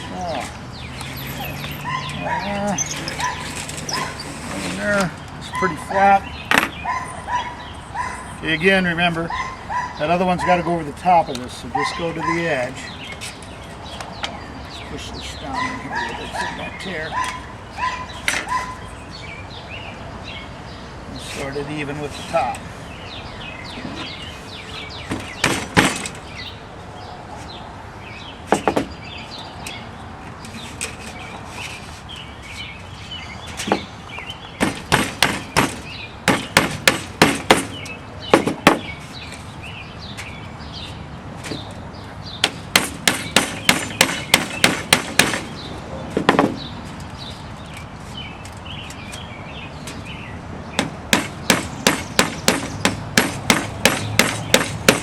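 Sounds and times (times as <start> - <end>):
sharp tapping on metal spline: 25.1 - 26.2, 33.5 - 38.9, 42.4 - 45.5, 50.8 - 55.0.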